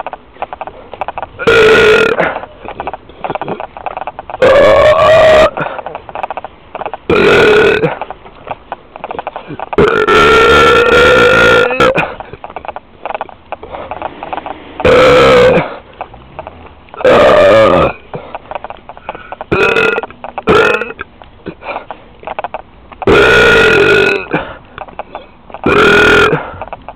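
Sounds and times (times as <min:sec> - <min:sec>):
person burping loudly: 0:01.4 - 0:06.4, 0:07.0 - 0:08.1, 0:09.1 - 0:12.4, 0:13.6 - 0:18.4, 0:19.0 - 0:21.9, 0:23.0 - 0:24.6, 0:25.6 - 0:26.6
faint clicks: 0:11.5 - 0:23.2, 0:23.8 - 0:26.9.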